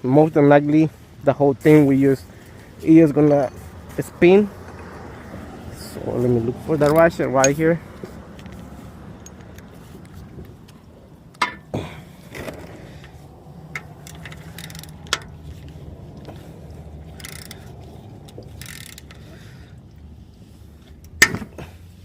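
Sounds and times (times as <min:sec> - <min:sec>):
metal hand tools clinking: 0:06.7 - 0:07.8.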